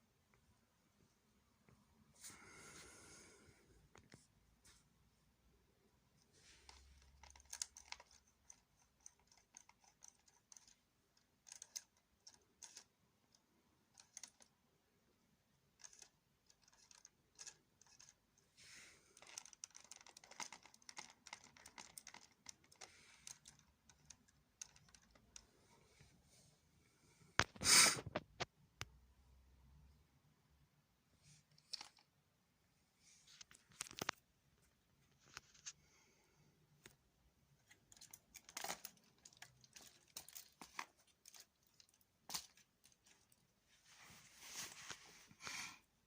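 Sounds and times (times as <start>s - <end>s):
plastic lego parts clicking: 6.7s - 14.6s, 15.7s - 18.2s, 19.2s - 25.4s, 37.6s - 43.3s.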